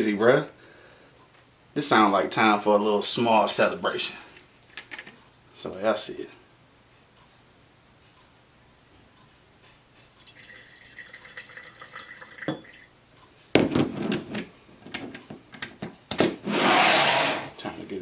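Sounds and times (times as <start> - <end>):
liquid poured into glass: 10.2 - 12.9
knocks and clunks of handling: 13.6 - 16.4.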